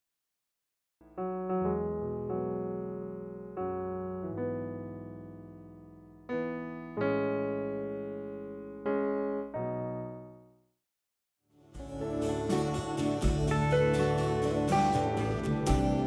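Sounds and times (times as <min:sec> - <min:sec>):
electric piano chords: 0:01.0 - 0:10.6, 0:11.8 - 0:16.0.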